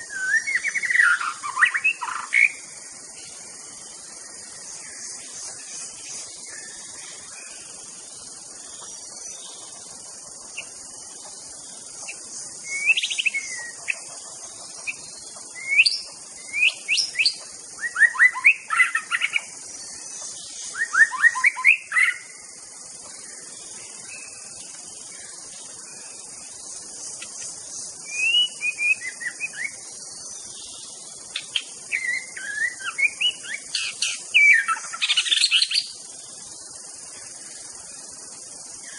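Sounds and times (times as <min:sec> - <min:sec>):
bird singing whistled phrases: 0:00.0 - 0:02.6, 0:12.6 - 0:13.8, 0:15.6 - 0:19.5, 0:20.7 - 0:22.3, 0:28.1 - 0:29.8, 0:31.5 - 0:35.8
high insect drone: 0:00.0 - 0:38.9.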